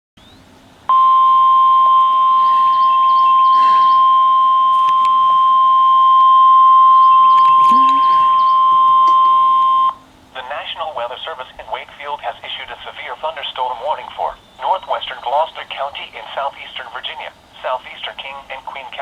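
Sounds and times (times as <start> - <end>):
steady alarm tone: 0.9 - 10.0.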